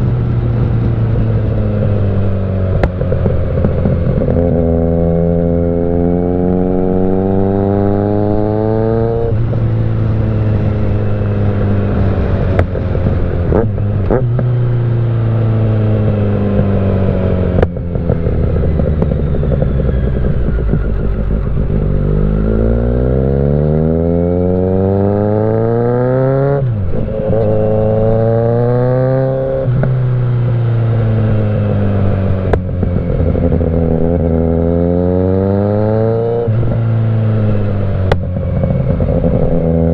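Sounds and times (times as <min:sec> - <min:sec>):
motorcycle engine accelerating: 0:00.0 - 0:39.9
exhaust pops: 0:38.0 - 0:39.7.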